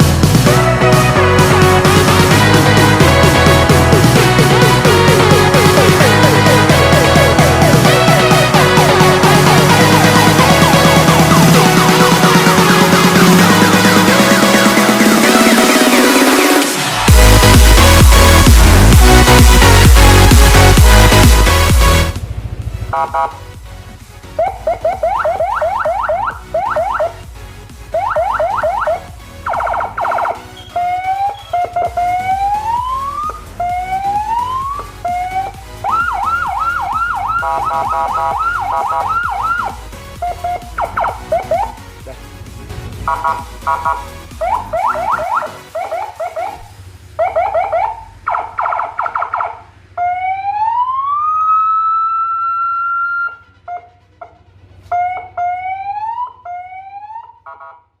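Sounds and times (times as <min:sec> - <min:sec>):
electronic siren wailing: 0:00.6 - 0:21.7, 0:22.9 - 0:23.4, 0:24.4 - 0:27.2, 0:27.9 - 0:41.8, 0:43.0 - 0:57.9
electronic siren yelp: 0:22.9 - 0:23.4, 0:24.4 - 0:27.2, 0:27.9 - 0:41.8, 0:43.1 - 0:57.9.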